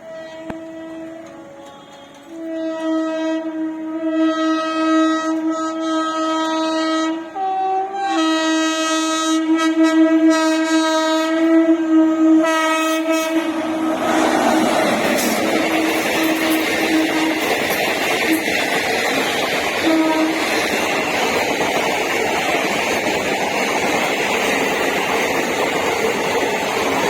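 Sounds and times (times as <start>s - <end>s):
locomotive air horn blast: 0.0s - 18.4s, 19.8s - 20.6s
approaching train rushing: 9.2s - 27.0s.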